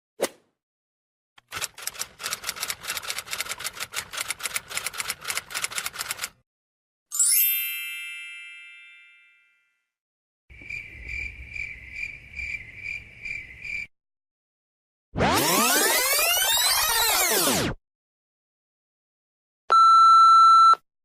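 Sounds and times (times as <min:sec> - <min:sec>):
typewriter keystrokes clacking: 0:01.4 - 0:06.4.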